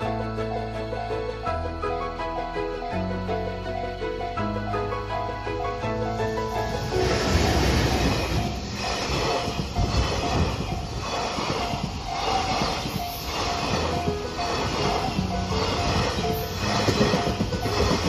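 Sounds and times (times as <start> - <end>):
train wheels on rails: 6.2 - 18.0.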